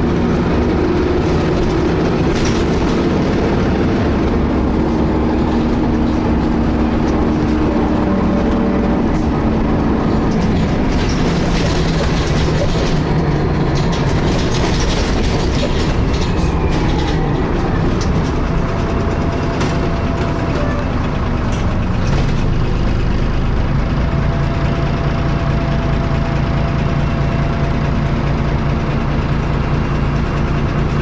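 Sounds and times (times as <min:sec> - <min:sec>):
bus engine and road noise: 0:00.0 - 0:31.0
body rattling: 0:09.0 - 0:22.8.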